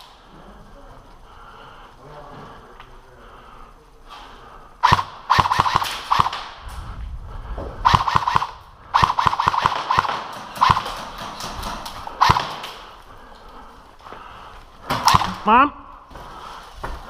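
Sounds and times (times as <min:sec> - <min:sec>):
airsoft gun firing bursts: 0:04.8 - 0:06.6, 0:07.8 - 0:13.0, 0:14.9 - 0:15.5.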